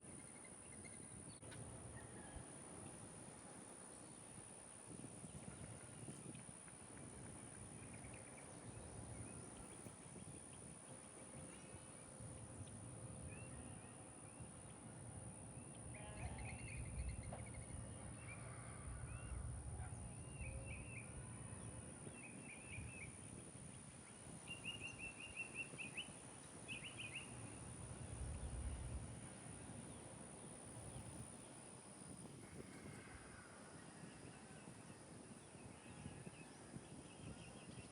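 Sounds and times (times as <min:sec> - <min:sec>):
low rumble: 0:16.7 - 0:22.1, 0:27.7 - 0:29.8.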